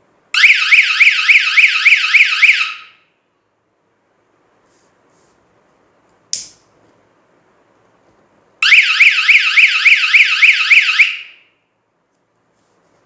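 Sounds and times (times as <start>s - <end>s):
sharp click: 6.3s - 6.6s
warbling alarm wail: 8.6s - 11.4s.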